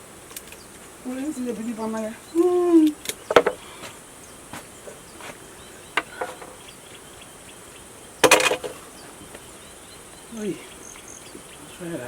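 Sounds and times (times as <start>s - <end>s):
insects buzzing: 0.0s - 12.0s
sharp clicks: 2.3s - 3.6s.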